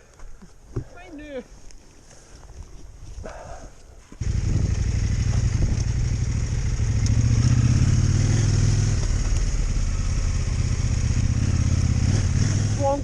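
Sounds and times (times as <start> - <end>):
motorcycle engine running: 4.2 - 13.0.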